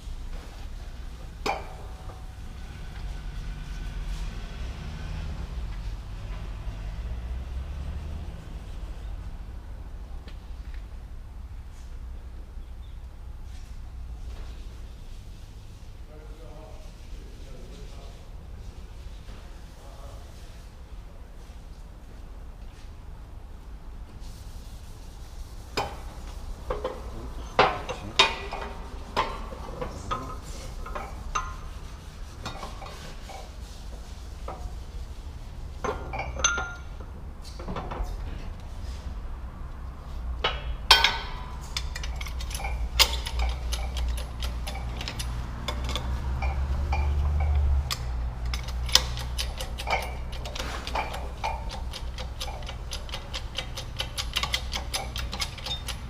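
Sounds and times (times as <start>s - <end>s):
metal tools clinking: 26.7s - 31.8s, 35.8s - 37.1s, 40.4s - 56.0s
rapid ticks: 46.8s - 56.0s.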